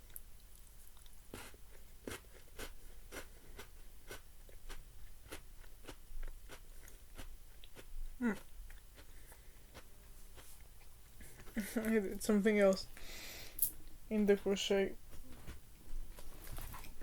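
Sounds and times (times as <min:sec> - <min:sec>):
person chewing crunchy food: 0:00.0 - 0:11.6.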